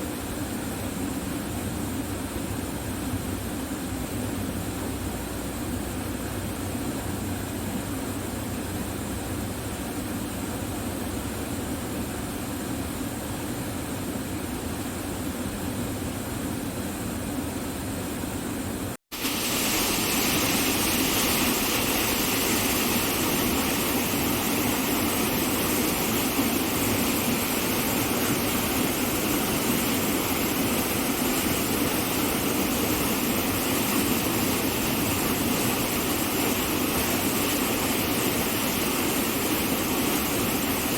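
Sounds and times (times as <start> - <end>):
rushing water: 19.1 - 40.9.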